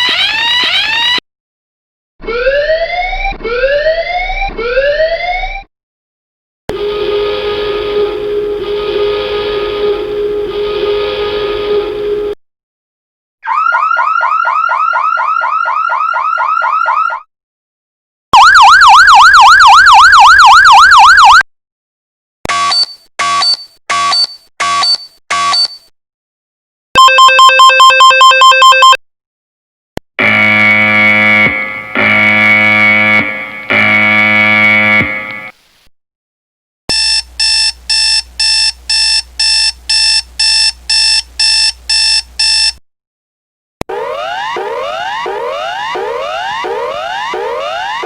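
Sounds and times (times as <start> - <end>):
electronic warbling siren: 0.0 - 1.2, 2.2 - 5.7, 6.7 - 12.4, 13.4 - 17.3, 18.4 - 21.4, 30.2 - 35.4, 43.9 - 48.0
electronic alarm beeping: 27.0 - 29.0, 36.9 - 42.8
two-tone electronic beeps: 27.0 - 29.0.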